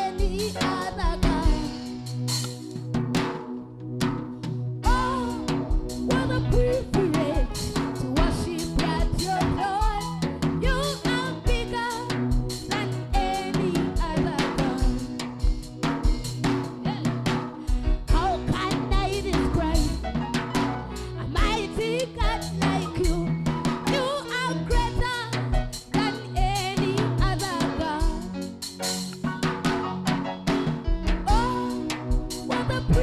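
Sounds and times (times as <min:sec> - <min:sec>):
person singing: 0:00.0 - 0:02.2, 0:04.8 - 0:15.5, 0:16.8 - 0:20.3, 0:20.9 - 0:28.5, 0:31.3 - 0:33.0
drum kit beat: 0:00.0 - 0:33.0
sustained bass line: 0:03.8 - 0:17.1, 0:17.8 - 0:23.6.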